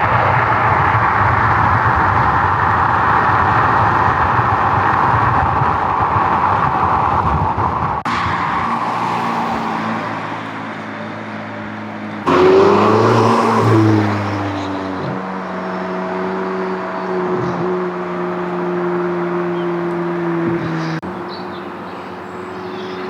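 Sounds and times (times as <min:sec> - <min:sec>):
car rushing past: 0:00.0 - 0:22.5
sports car engine accelerating: 0:08.0 - 0:23.0.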